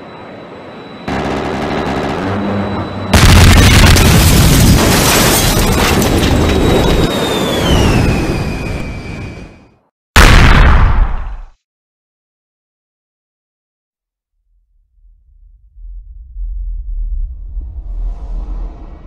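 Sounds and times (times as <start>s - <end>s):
high tone sliding down: 0.0s - 3.6s
explosion blast rumbling: 1.1s - 8.8s.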